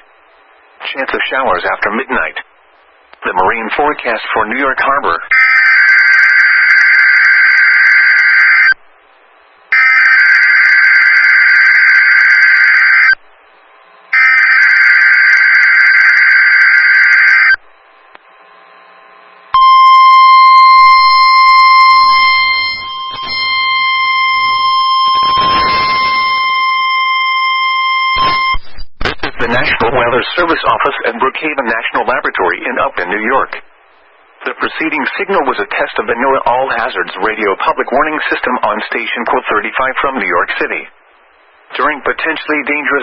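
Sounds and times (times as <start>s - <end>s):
steady warning alarm tone: 5.3s - 8.8s, 9.7s - 17.6s, 18.9s - 28.6s
warbling digital data bursts: 20.6s - 26.4s.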